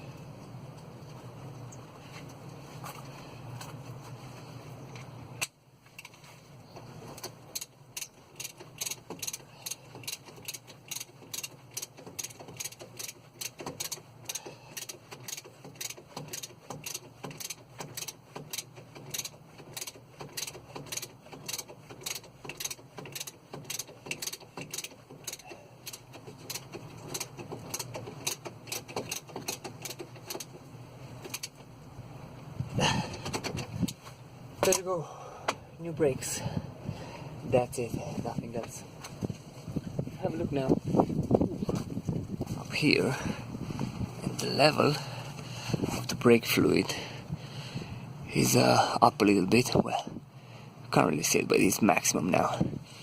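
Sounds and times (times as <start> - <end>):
ratchet wrench clicking: 7.5 - 30.5.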